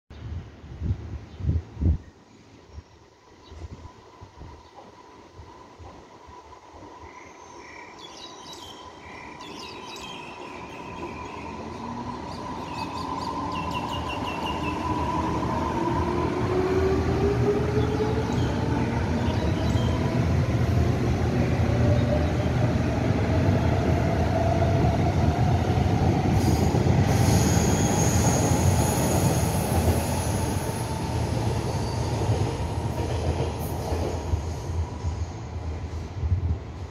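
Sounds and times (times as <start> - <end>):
high squeal: 26.5 - 32.2.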